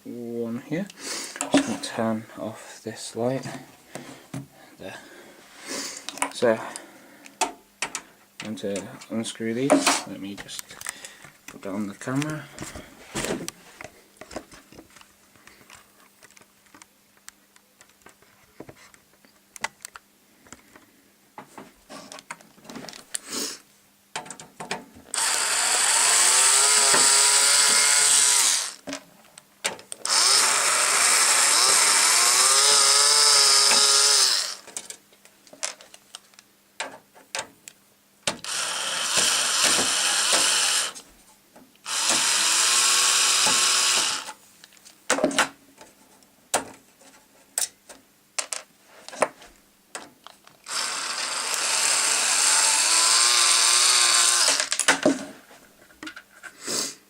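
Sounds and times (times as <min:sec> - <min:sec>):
handling clicks and knocks: 0:07.4 - 0:13.6, 0:24.1 - 0:25.0
electric screwdriver whine: 0:25.1 - 0:28.8, 0:30.0 - 0:34.7, 0:38.4 - 0:41.0, 0:41.8 - 0:44.4, 0:50.7 - 0:54.8.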